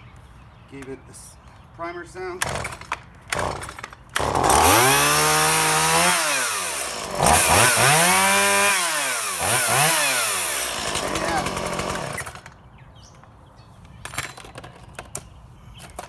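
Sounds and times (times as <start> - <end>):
chainsaw engine revving: 2.4 - 12.5.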